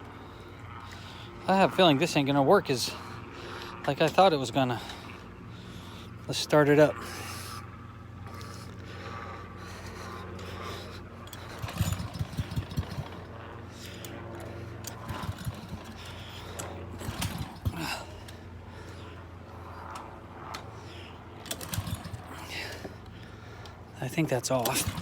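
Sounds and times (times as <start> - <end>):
recoil starter pulls cranking engine: 10.4 - 18.8, 21.4 - 23.0, 24.0 - 25.0.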